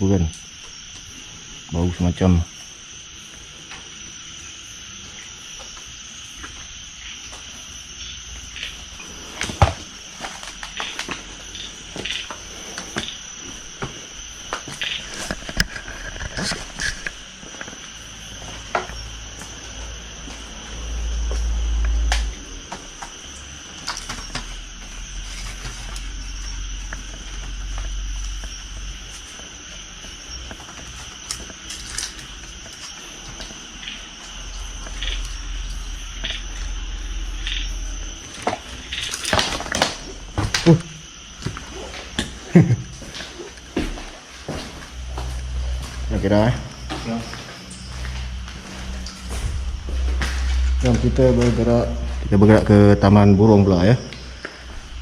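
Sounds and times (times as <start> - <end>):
crickets chirping: 0.0 - 55.0
low rumble: 48.0 - 52.8.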